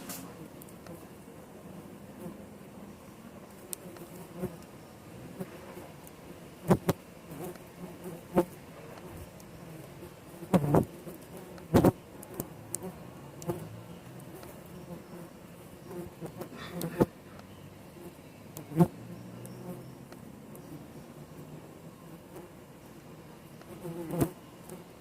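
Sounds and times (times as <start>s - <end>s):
bees buzzing: 0.0s - 25.0s
single bee passing close: 17.9s - 22.6s, 23.7s - 25.0s.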